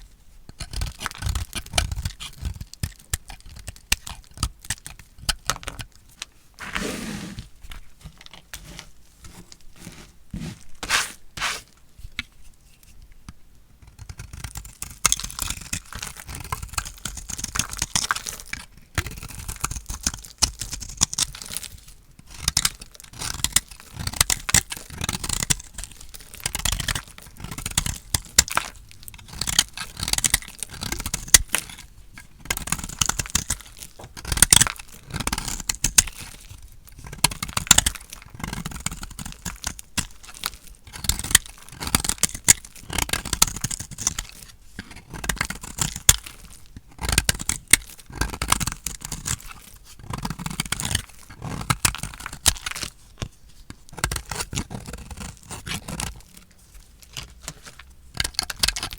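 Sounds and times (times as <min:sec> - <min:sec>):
blade cutting crunchy soap: 0:06.6 - 0:11.8, 0:22.3 - 0:56.4, 0:57.0 - 0:58.9.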